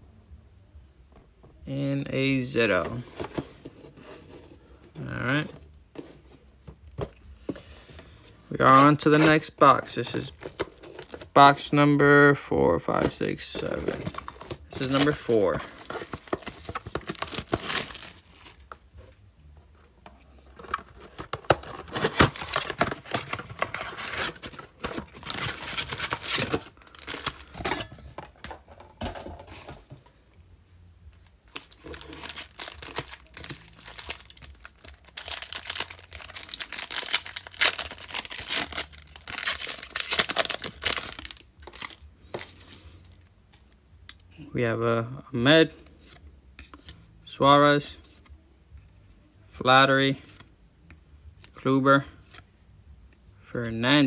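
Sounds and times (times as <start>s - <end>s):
foil wrappers crinkling and tearing: 8.6s - 11.3s, 13.5s - 18.8s, 20.6s - 27.9s, 31.5s - 43.3s.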